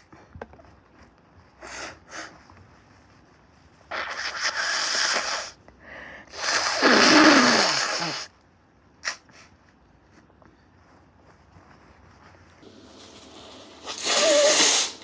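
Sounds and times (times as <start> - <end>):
nose blowing: 3.9 - 5.6, 6.3 - 8.3, 13.8 - 15.0.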